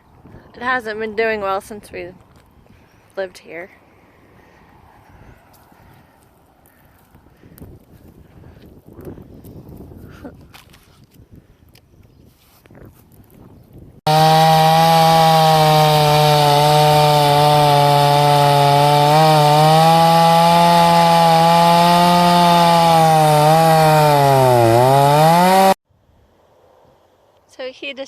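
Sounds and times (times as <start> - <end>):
chainsaw cutting wood: 14.1 - 25.8.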